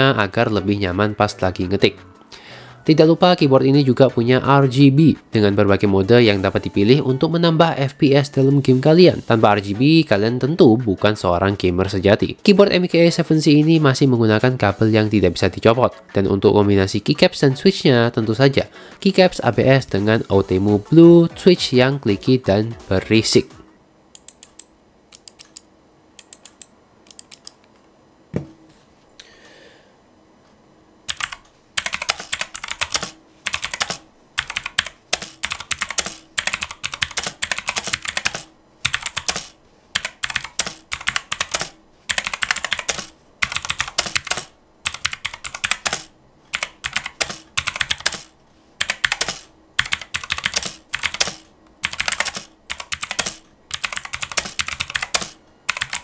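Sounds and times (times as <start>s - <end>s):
clicky mechanical keyboard typing: 24.2s - 27.6s, 31.1s - 56.0s.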